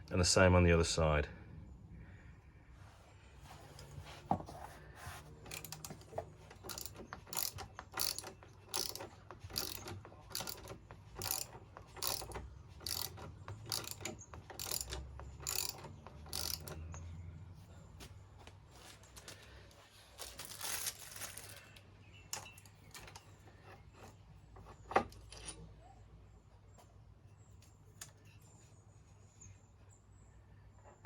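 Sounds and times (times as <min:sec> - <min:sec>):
socket ratchet clicking: 0:05.5 - 0:17.0.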